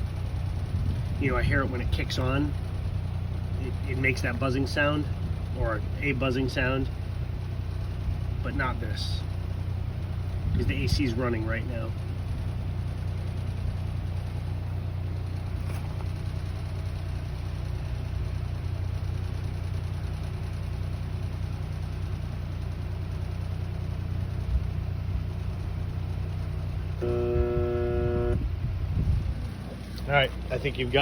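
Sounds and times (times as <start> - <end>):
buzz from air conditioner: 26.9 - 29.2
air conditioner humming: 26.9 - 31.0.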